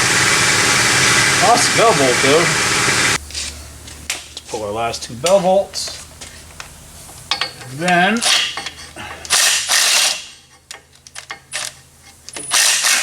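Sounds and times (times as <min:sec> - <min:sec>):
air ratchet running: 0:08.6 - 0:10.3, 0:11.6 - 0:13.0.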